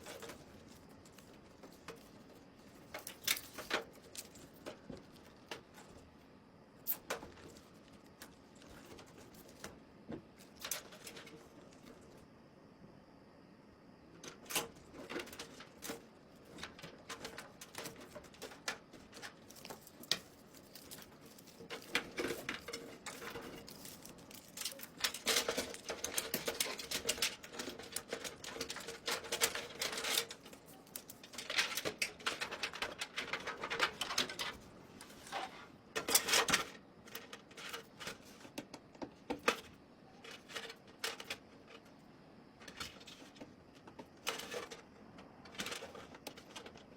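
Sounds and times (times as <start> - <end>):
small hard parts clicking: 0.0 - 6.2, 14.2 - 34.6.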